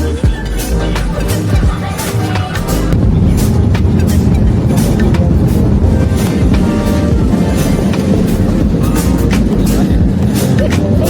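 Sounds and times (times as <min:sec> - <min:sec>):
background music with percussive beat: 0:00.0 - 0:11.0
steady low rumble: 0:02.5 - 0:11.0.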